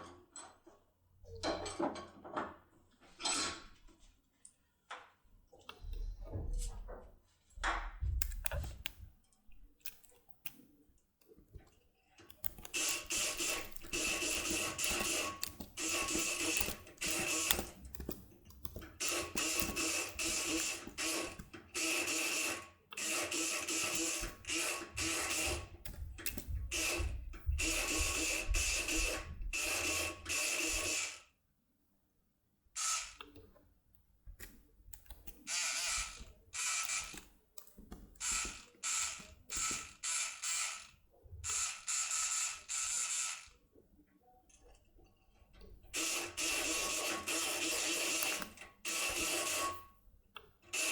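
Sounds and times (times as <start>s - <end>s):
clicks: 8.2s - 10.6s, 11.2s - 21.7s, 25.5s - 29.3s
electric pick gun buzzing: 12.6s - 17.7s, 18.8s - 25.7s, 26.7s - 31.2s, 35.5s - 37.2s, 38.2s - 43.5s, 46.0s - 49.8s.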